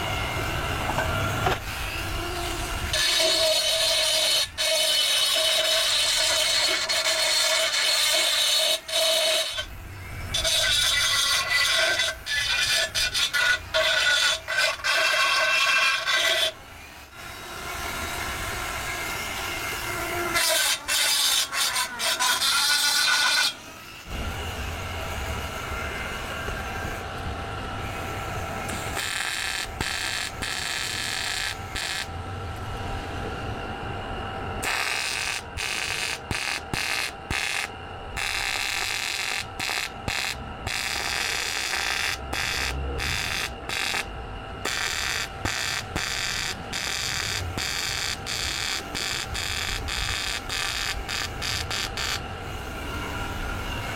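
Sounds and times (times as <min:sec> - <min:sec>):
metal grinding on wheel: 0:00.9 - 0:16.6.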